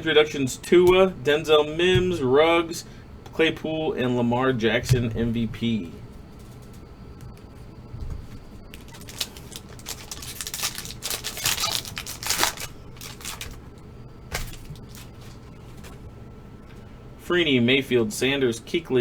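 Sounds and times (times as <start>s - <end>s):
cards being handled: 8.7s - 13.6s
foil wrapper tearing and crinkling: 8.7s - 13.7s.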